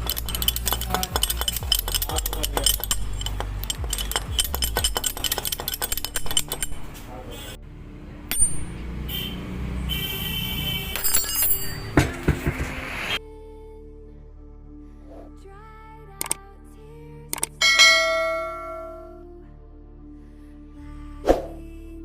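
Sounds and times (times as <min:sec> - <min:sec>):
hand tools clinking on metal: 0:00.0 - 0:07.1, 0:11.0 - 0:12.2, 0:17.6 - 0:19.1
knocks and clatter: 0:00.0 - 0:07.1, 0:11.0 - 0:13.0
music: 0:00.0 - 0:09.0, 0:13.1 - 0:22.0.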